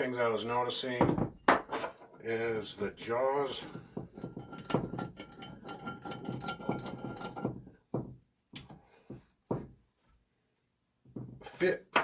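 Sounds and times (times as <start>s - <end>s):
knocks on metal vise: 3.9s - 5.3s.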